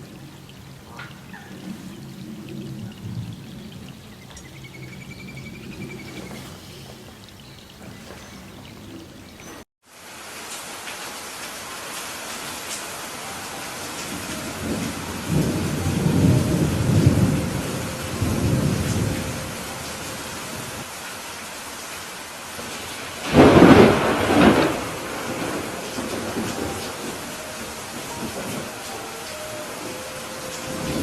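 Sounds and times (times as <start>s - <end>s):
low rolling thunder: 0.0s - 6.5s, 13.1s - 20.9s, 22.6s - 31.0s
steady rain: 0.0s - 31.0s
sharp loud thunderclap: 22.6s - 28.9s.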